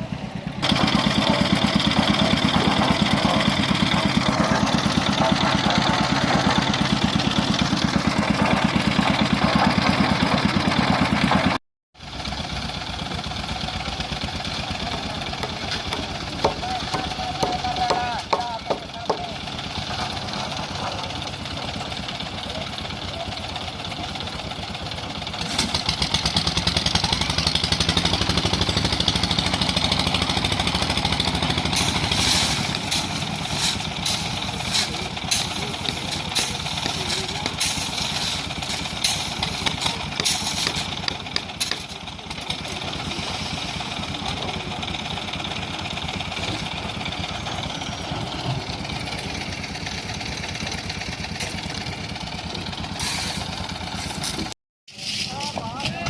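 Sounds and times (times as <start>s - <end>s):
concrete mixer engine running: 0.0s - 56.0s
sharp clanks and knocks: 14.9s - 21.0s, 31.6s - 42.8s.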